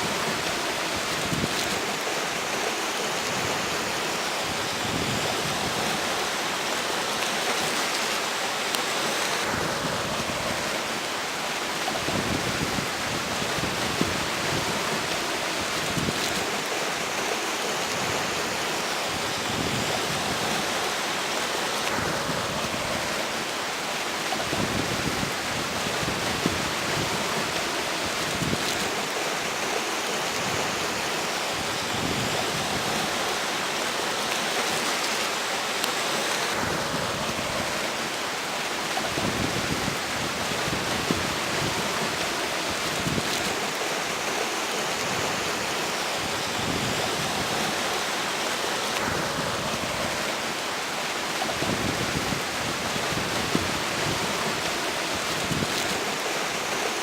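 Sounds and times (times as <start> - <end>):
river water rushing: 0.0 - 57.0
strong wind blowing: 11.8 - 21.0, 21.9 - 23.6, 24.4 - 29.1, 36.4 - 56.3.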